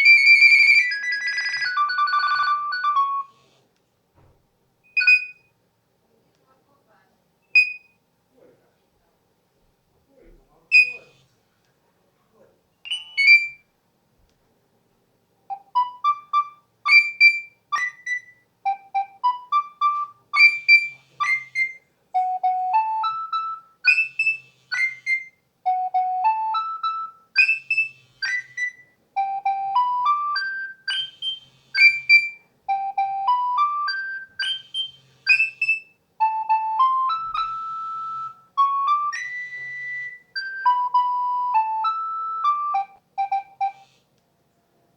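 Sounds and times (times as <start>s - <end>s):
phone ringtone tune: 0.0s - 3.3s, 5.0s - 5.4s, 12.9s - 13.6s, 15.5s - 43.9s.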